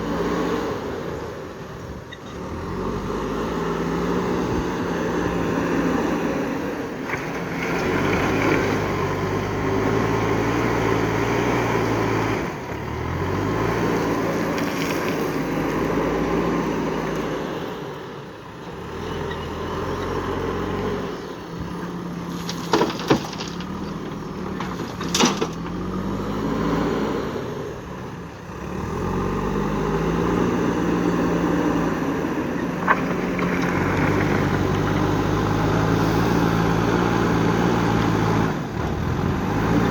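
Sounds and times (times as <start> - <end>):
backhoe diesel engine revving: 0.0 - 39.9.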